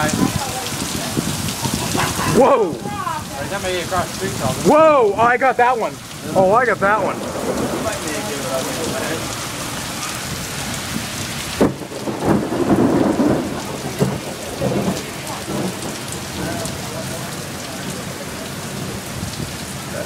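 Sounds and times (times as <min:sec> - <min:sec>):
rumbling thunder: 0:00.0 - 0:04.7, 0:06.2 - 0:20.0
heavy rain: 0:00.0 - 0:20.0
sharp thunderclap: 0:07.0 - 0:09.4, 0:10.2 - 0:17.2.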